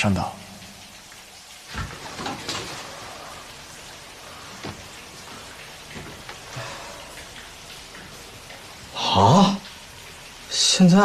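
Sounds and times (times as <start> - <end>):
steady hiss: 0.0 - 11.0.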